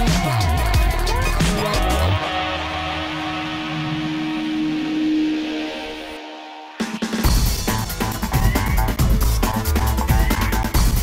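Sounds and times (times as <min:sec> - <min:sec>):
heavy electronic music: 0:00.0 - 0:11.0
held guitar-like tone: 0:01.6 - 0:07.1.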